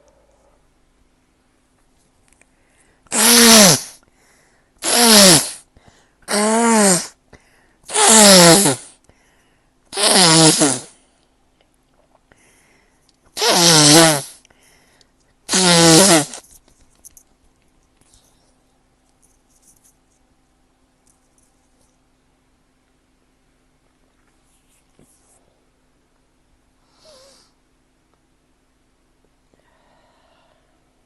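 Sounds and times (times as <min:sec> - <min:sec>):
person sneezing: 0:03.1 - 0:04.0, 0:04.8 - 0:05.7, 0:06.3 - 0:07.2.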